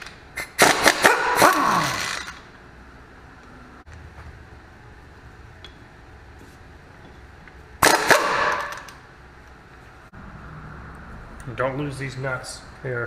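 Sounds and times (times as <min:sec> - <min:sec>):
impact wrench hammering: 0:00.0 - 0:02.4, 0:07.8 - 0:09.0.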